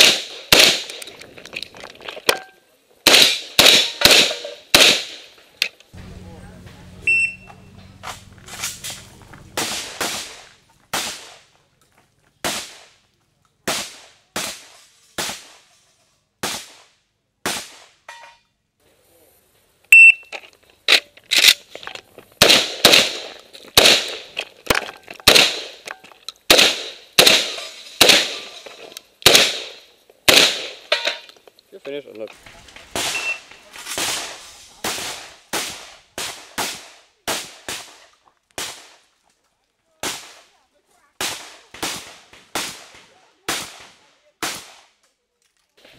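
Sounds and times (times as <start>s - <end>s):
shotgun shots: 0.0s - 1.1s, 3.0s - 5.3s, 8.1s - 11.4s, 12.4s - 13.0s, 22.4s - 25.9s, 26.5s - 31.2s, 32.8s - 38.0s
short high electronic beep: 7.0s - 7.5s, 20.0s - 20.3s.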